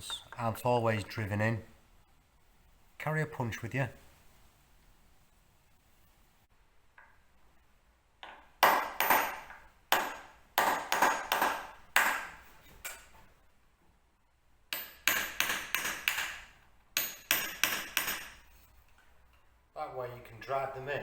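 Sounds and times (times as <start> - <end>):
hammer striking metal punch: 8.2 - 13.0, 14.7 - 18.4.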